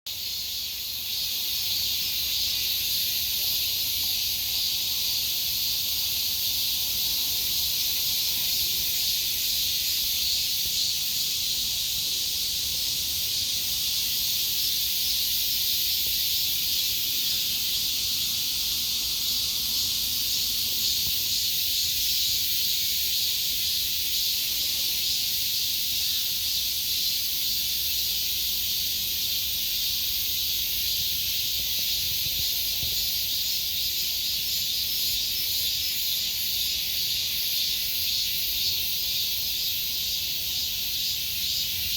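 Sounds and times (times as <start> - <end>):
cicadas droning: 0.1 - 41.9.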